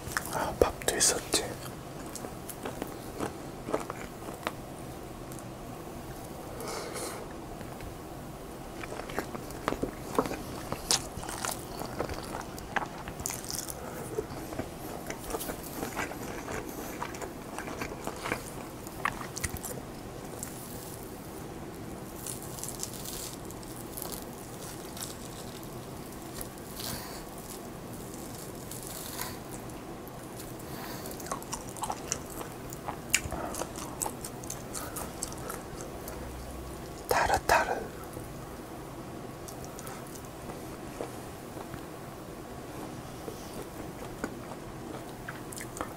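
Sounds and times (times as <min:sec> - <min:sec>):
person chewing and biting food: 0:08.8 - 0:21.2, 0:22.1 - 0:36.3, 0:43.2 - 0:45.9.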